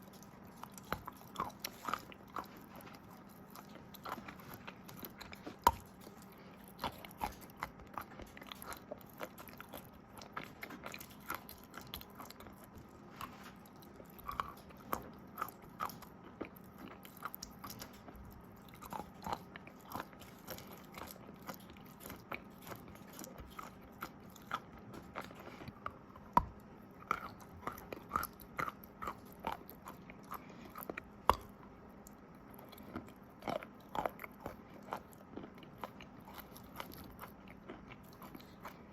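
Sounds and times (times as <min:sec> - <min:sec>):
crunchy chewing of chalk: 0:00.0 - 0:38.9.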